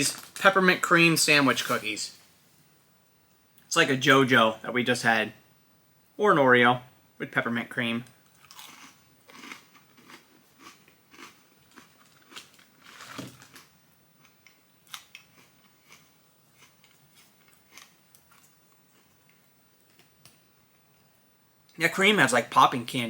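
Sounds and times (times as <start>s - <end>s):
cookie crunching and crackling: 8.2s - 20.8s.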